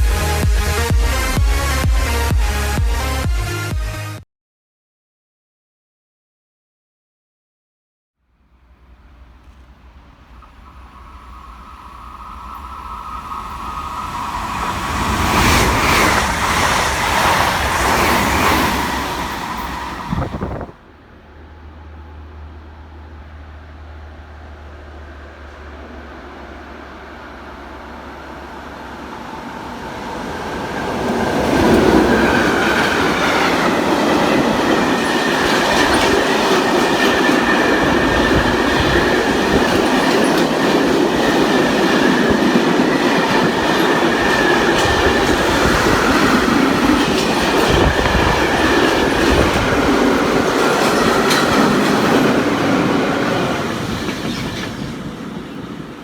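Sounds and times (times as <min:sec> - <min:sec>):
train passing: 0:00.0 - 0:03.2, 0:08.3 - 0:56.0
wheels clattering on rails: 0:30.1 - 0:56.0.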